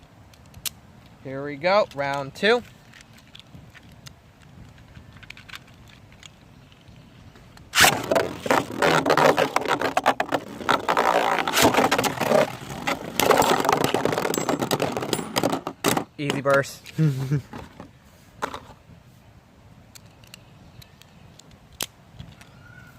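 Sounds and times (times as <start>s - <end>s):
spinning tops clattering and scraping: 7.8s - 15.8s.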